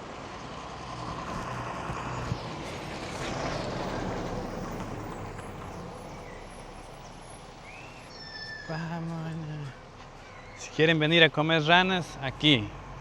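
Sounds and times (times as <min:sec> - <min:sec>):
vehicle passing by: 0:00.0 - 0:08.1.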